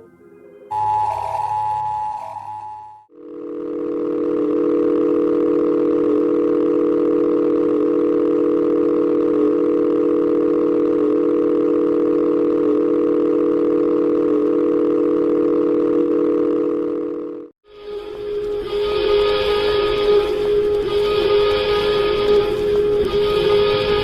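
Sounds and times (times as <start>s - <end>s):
steady two-pitch alert tone: 0.7s - 3.1s.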